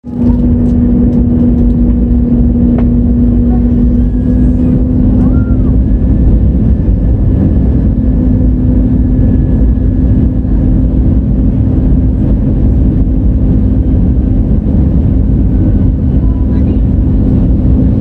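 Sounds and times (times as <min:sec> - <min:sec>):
airplane cabin engine rumble: 0:00.0 - 0:18.0.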